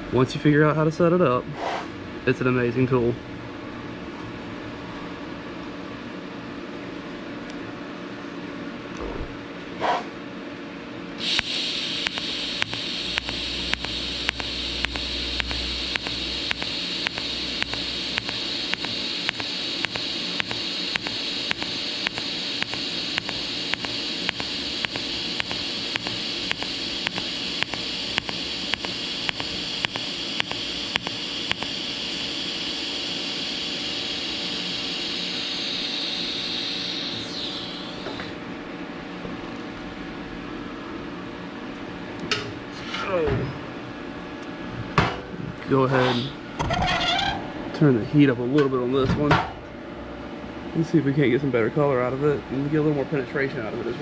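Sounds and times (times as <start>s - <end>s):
steady hum: 11.1s - 38.5s
pulser ticking: 11.2s - 38.2s
welding arc hissing: 11.2s - 38.4s, 45.9s - 46.4s.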